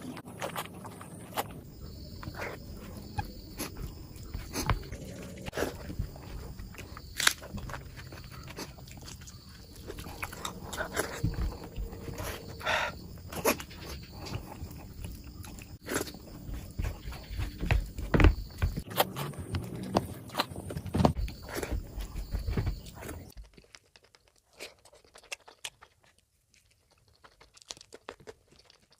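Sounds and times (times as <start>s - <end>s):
person chewing with wet mouth smacks: 22.8s - 28.9s.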